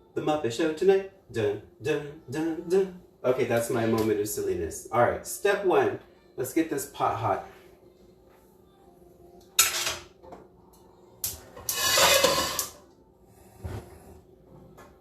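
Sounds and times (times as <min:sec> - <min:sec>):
metal pot clanking: 0:11.6 - 0:12.7
pot scraping rattle: 0:11.6 - 0:12.8.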